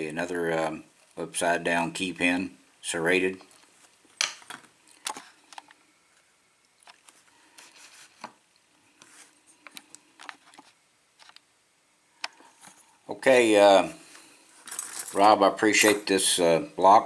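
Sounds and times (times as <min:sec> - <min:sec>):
faint rustling: 0:03.4 - 0:11.4.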